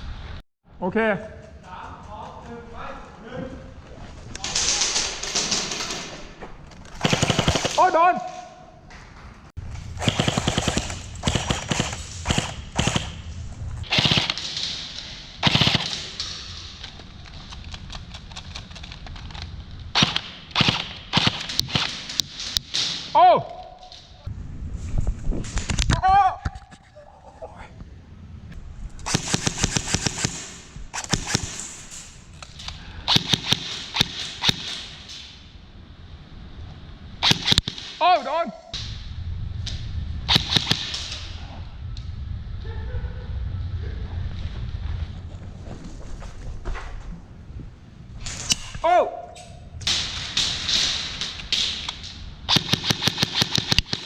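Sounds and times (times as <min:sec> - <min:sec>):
airsoft guns firing bursts: 0:07.0 - 0:08.0, 0:09.9 - 0:16.2, 0:20.0 - 0:23.1, 0:29.0 - 0:31.8, 0:33.1 - 0:35.0, 0:37.2 - 0:38.0, 0:40.3 - 0:41.0, 0:52.5 - 0:54.0.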